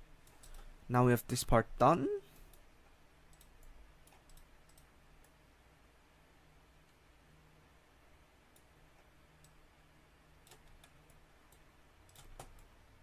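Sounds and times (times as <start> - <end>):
computer mouse clicks: 0.2 - 0.7, 2.5 - 5.4, 8.5 - 9.6, 10.4 - 12.7.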